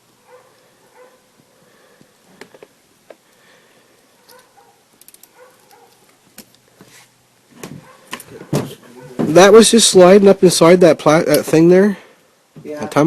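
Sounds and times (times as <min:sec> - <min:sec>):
small metal parts clicking: 0:04.2 - 0:06.7.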